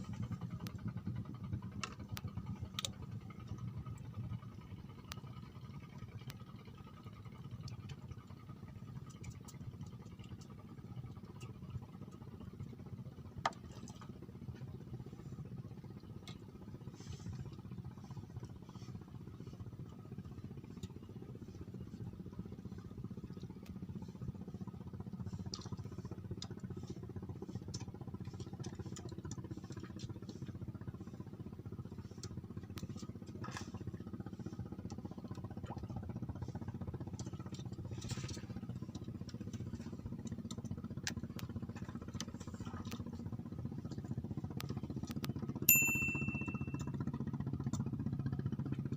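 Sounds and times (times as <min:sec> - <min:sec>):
faint clicks and knocks: 0:00.0 - 0:06.7, 0:31.9 - 0:45.5
small engine running: 0:13.6 - 0:48.9.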